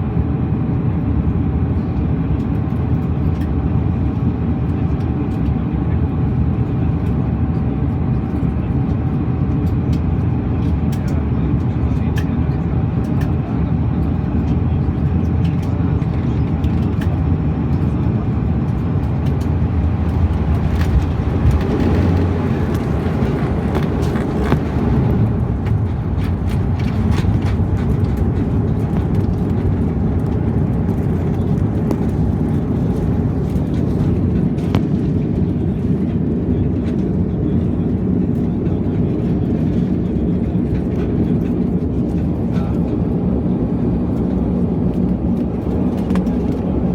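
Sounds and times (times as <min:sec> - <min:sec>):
turboprop engine rumble: 0:00.0 - 0:46.9.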